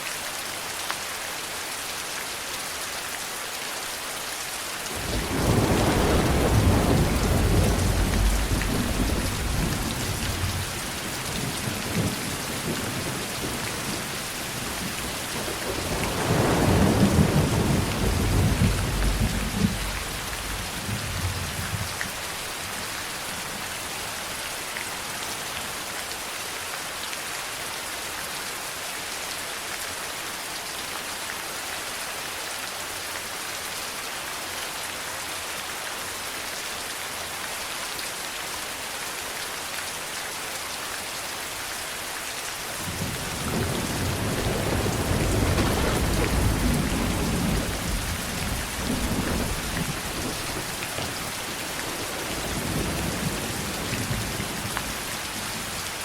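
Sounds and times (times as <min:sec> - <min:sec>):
steady rain falling: 0:00.0 - 0:56.0
thunder rumbling: 0:04.9 - 0:22.0, 0:42.8 - 0:55.0.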